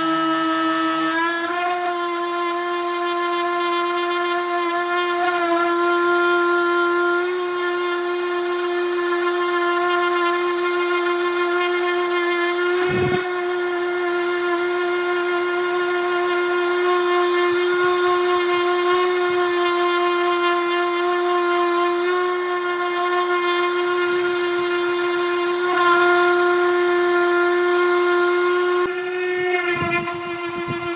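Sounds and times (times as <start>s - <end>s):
electric sander on wood: 0.0s - 30.9s.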